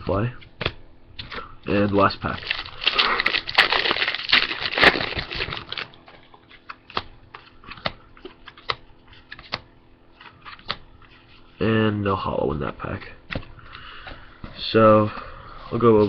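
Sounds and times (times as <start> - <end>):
foil pack tearing and crinkling: 1.8 - 6.0.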